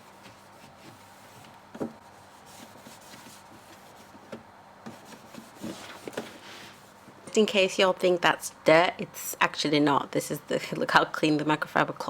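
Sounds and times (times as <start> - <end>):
cloth rubbing plastic: 0.0 - 7.2.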